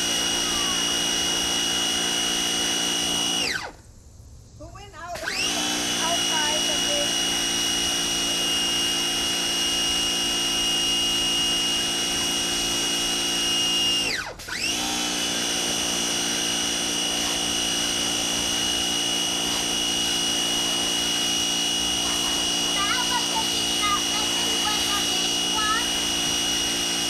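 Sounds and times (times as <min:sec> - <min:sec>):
pressure washer motor whining: 0:00.0 - 0:03.8, 0:05.2 - 0:27.0.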